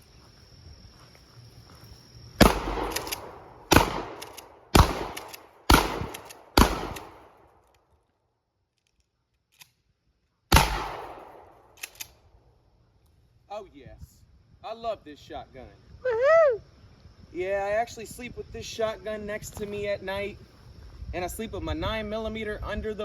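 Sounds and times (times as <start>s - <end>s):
shotgun shots: 2.4s - 7.4s, 10.5s - 12.0s.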